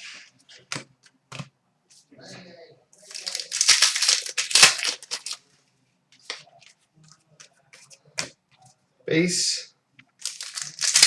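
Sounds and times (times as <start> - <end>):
foil wrapper crinkling and tearing: 3.1 - 5.4, 10.2 - 11.0.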